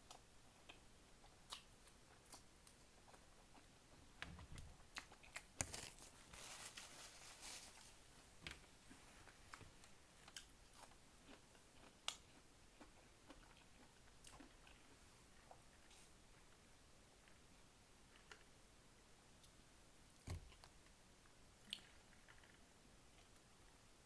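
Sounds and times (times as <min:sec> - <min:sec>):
person chewing food: 0:00.1 - 0:03.8, 0:09.2 - 0:15.8.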